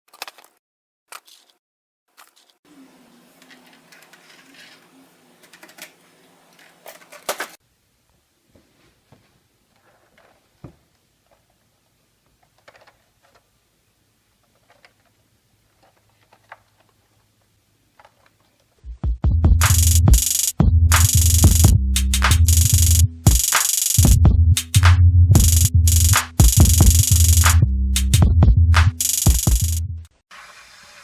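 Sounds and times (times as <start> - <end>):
hands handling toy and packaging: 0.1 - 2.6, 3.4 - 7.6, 14.4 - 18.8.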